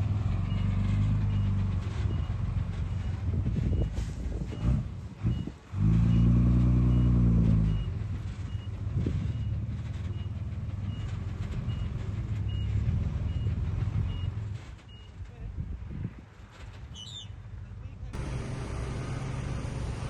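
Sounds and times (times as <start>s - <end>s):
bulldozer diesel engine: 0.0s - 15.7s, 16.3s - 20.0s.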